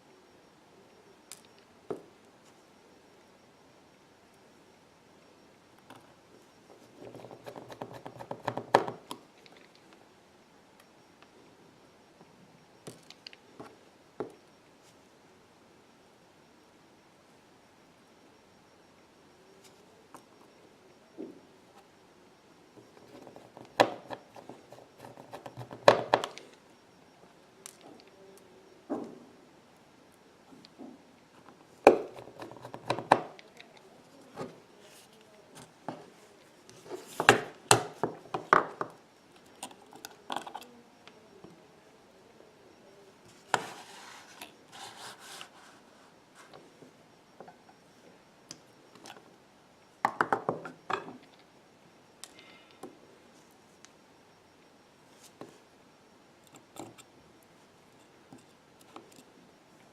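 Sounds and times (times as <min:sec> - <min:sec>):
rustling scrape: 0:43.6 - 0:46.5.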